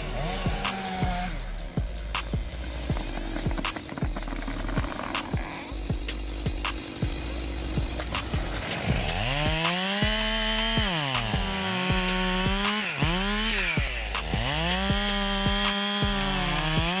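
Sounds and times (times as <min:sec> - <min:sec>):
chainsaw cutting wood: 0:00.0 - 0:17.0.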